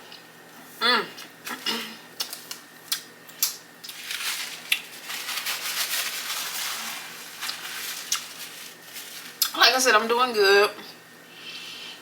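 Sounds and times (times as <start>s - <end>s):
wet crackly crunching: 2.2s - 9.6s.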